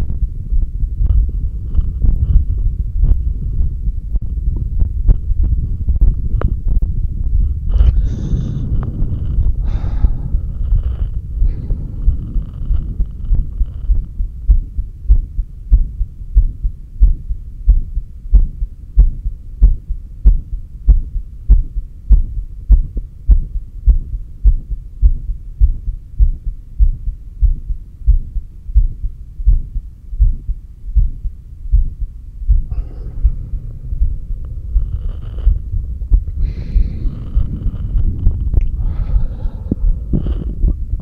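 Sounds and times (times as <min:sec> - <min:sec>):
heartbeat thumps: 0:00.0 - 0:41.0.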